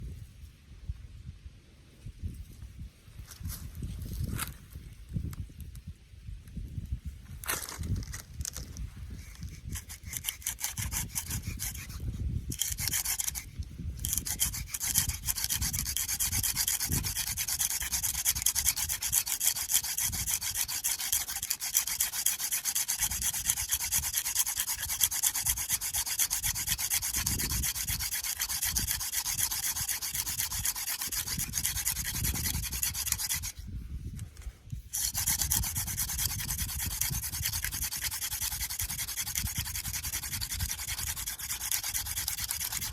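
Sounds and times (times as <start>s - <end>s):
wooden spindle rubbing: 8.7s - 42.9s.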